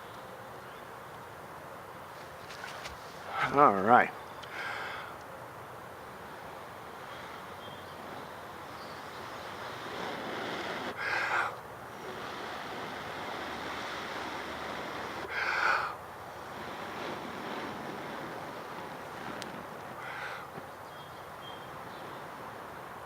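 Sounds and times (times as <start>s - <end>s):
rushing hiss of air: 6.2s - 20.6s
person blowing on embers: 6.2s - 20.7s.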